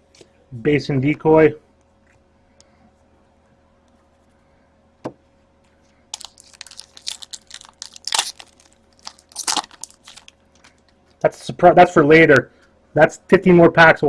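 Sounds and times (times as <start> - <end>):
wrapper crinkling and tearing: 6.1 - 11.0.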